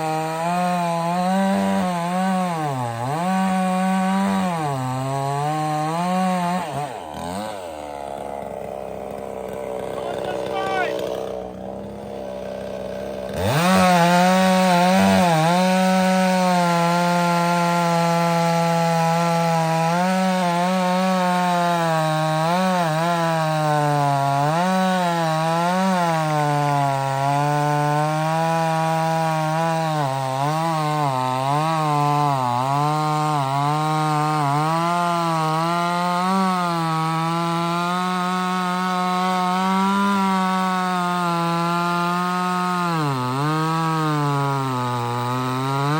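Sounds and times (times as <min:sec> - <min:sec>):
chainsaw cutting log: 0:00.0 - 0:45.9.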